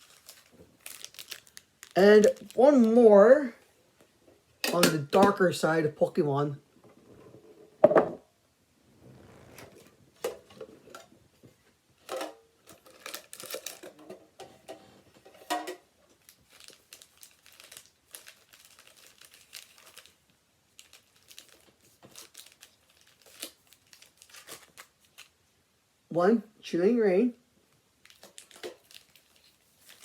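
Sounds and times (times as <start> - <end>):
plastic packaging crinkling: 0.0 - 3.0, 12.0 - 14.0, 15.4 - 25.4, 28.0 - 30.0.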